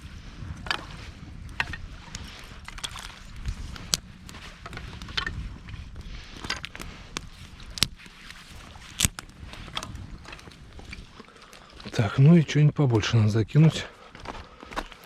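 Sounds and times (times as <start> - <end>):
wind on microphone: 0.0 - 11.3
campfire crackling and popping: 0.6 - 5.6, 6.4 - 12.0.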